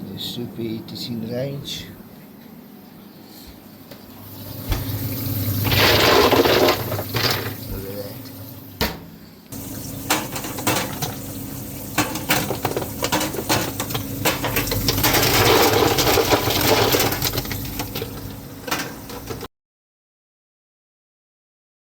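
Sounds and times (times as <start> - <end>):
ice machine humming: 4.1 - 19.5
ice cubes clattering: 5.5 - 7.8, 9.6 - 19.5.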